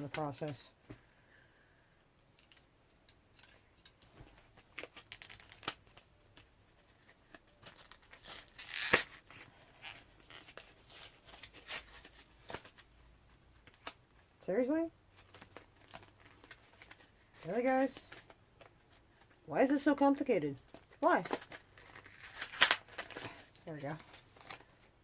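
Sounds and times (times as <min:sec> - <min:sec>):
plastic crinkling and tearing: 0:04.5 - 0:14.0, 0:15.2 - 0:19.3, 0:20.6 - 0:25.0
sharp plastic crack: 0:20.7 - 0:23.4
knife cutting plastic packaging: 0:21.2 - 0:23.4.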